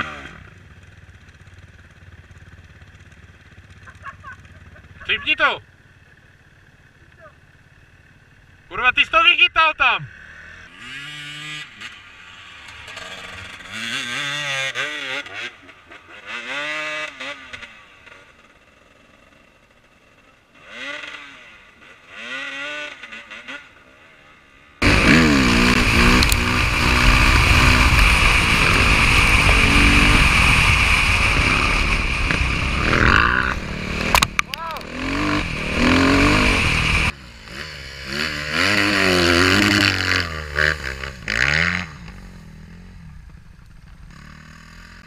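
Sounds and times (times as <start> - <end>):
motorcycle engines revving: 0.0 - 45.0
engine held at high revs: 10.2 - 17.7, 24.8 - 43.2.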